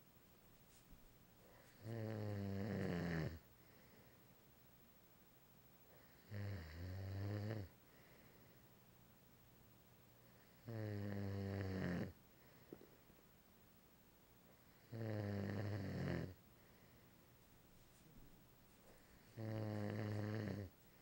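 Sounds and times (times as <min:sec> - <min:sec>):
quiet breathing: 0:00.6 - 0:04.5, 0:05.8 - 0:08.9, 0:10.0 - 0:13.3, 0:14.4 - 0:21.0
man snoring: 0:01.7 - 0:03.4, 0:06.2 - 0:07.7, 0:10.6 - 0:12.2, 0:14.8 - 0:16.4, 0:19.2 - 0:20.7.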